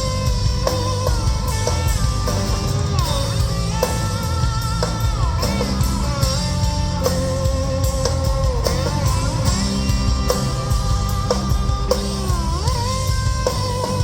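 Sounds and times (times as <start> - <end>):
bass guitar: 0.0 - 14.0
drum kit beat: 0.0 - 14.0
lead guitar bending notes: 0.0 - 14.0.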